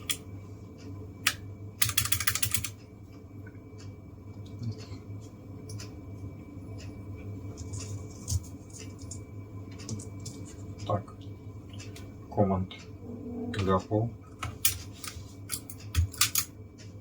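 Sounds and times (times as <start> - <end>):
mechanical keyboard clicking: 1.3 - 2.8, 15.5 - 16.5.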